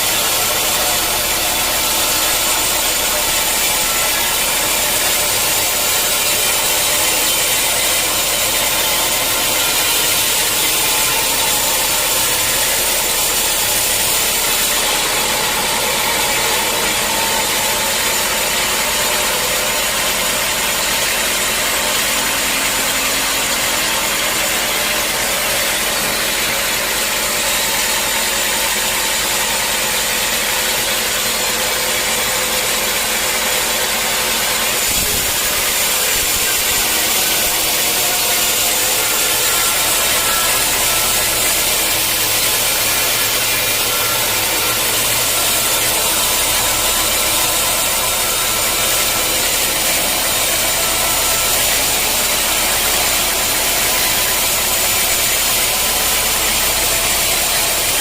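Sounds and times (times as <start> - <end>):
sawmill saw running: 0.0 - 58.0.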